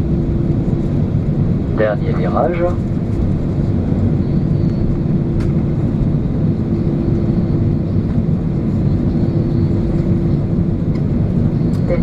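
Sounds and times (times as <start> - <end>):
jet engines idling in cabin: 0.0 - 12.0.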